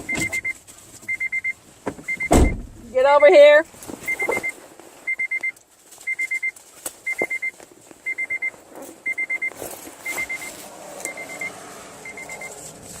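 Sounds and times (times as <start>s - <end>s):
electronic warning beeper: 0.0s - 2.6s, 4.1s - 4.5s, 5.1s - 6.5s, 7.1s - 7.5s, 8.1s - 12.6s.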